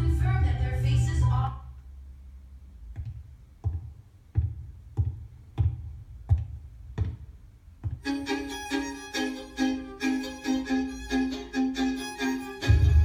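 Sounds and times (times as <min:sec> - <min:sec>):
low thumping beat: 0:02.9 - 0:08.4, 0:12.5 - 0:13.0
string melody: 0:08.0 - 0:13.0.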